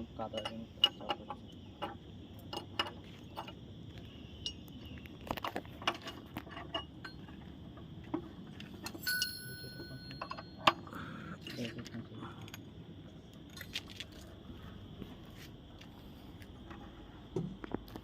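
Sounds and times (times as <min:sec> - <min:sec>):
metal tools clinking on steel: 0:00.2 - 0:03.6, 0:08.6 - 0:12.7.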